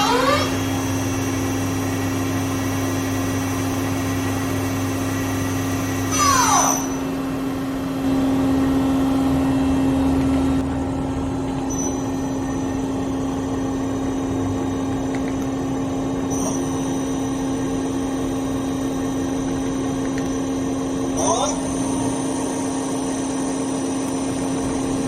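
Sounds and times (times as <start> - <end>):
thin high whine: 0.0 - 10.7, 11.6 - 13.9, 16.2 - 25.0
machine hum: 0.0 - 25.0.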